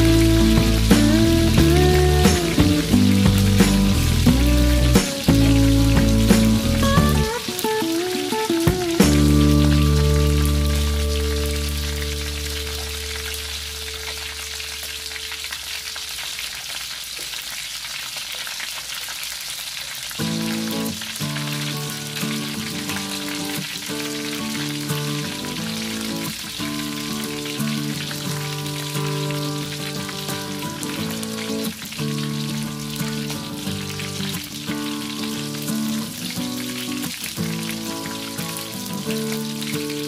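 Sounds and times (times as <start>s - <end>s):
background music: 0.0s - 14.5s
crackling hiss: 0.0s - 40.0s.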